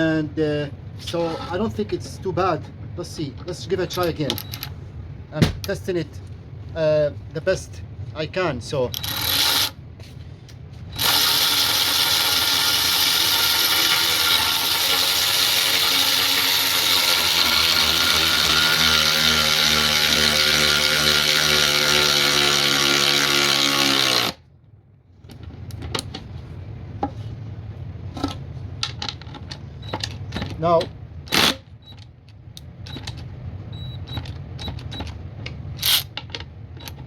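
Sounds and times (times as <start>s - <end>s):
electric ratchet wrench whining: 9.0s - 9.8s, 11.0s - 24.4s.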